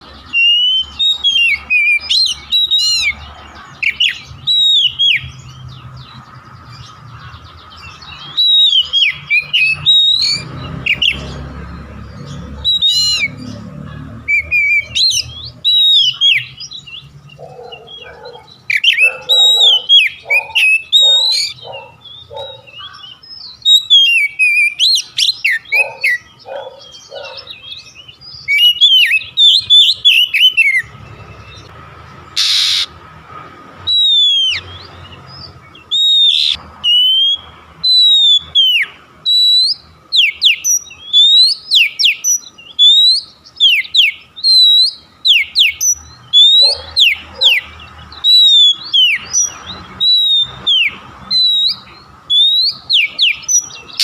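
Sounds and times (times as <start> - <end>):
magpie-robin singing whistled phrases: 0.3 - 5.8, 7.8 - 13.5, 14.2 - 31.7, 32.4 - 32.9, 33.9 - 54.0
bird rough pulsed notes: 32.3 - 32.9.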